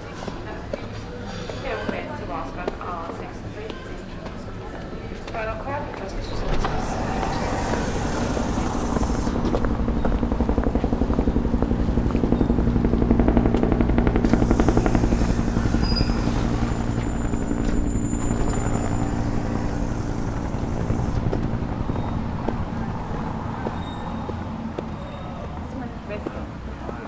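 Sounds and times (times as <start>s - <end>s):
helicopter rotor beating: 3.1s - 26.2s
low engine drone: 4.6s - 25.5s.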